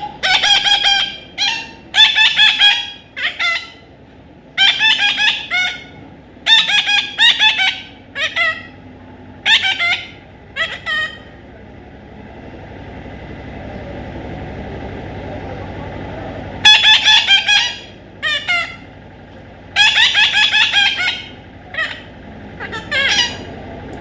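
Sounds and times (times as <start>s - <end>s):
parrot calling harshly: 0.0s - 3.9s, 4.6s - 8.8s, 9.4s - 11.4s, 16.6s - 18.9s, 19.8s - 23.6s.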